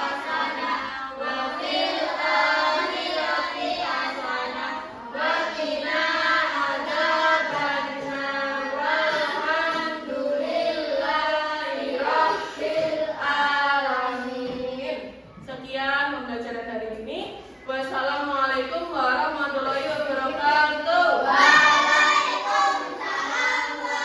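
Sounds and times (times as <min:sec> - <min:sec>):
children chanting in unison: 0:00.0 - 0:15.1, 0:19.9 - 0:24.0.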